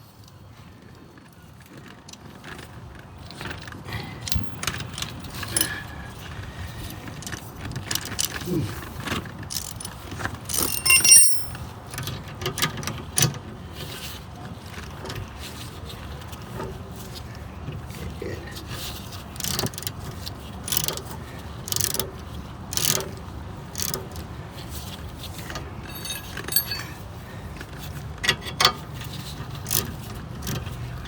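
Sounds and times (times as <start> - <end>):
metal tools clicking and scraping: 9.5 - 11.7, 25.8 - 27.1
ringing metal clink: 10.5 - 11.7, 25.9 - 27.0.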